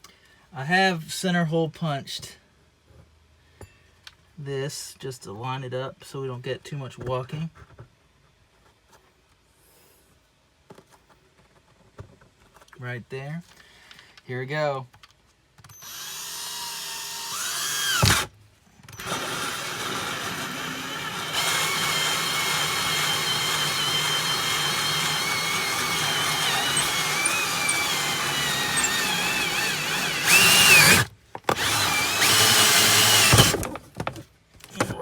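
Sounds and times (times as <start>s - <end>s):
power drill hole saw cutting: 15.7s - 18.3s, 18.9s - 33.7s.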